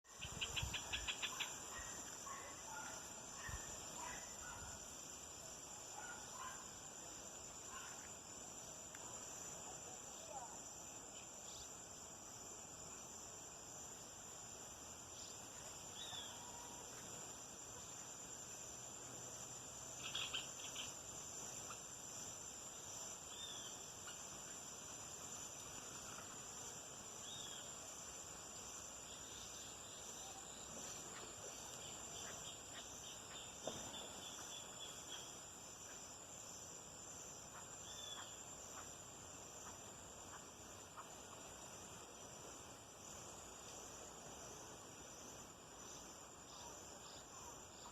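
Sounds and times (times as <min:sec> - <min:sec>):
crickets chirping: 0:00.0 - 0:47.9
animal chirps: 0:00.1 - 0:02.0.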